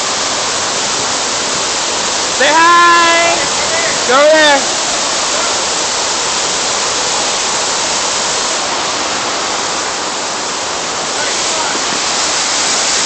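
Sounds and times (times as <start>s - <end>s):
waterfall rushing: 0.0s - 13.0s.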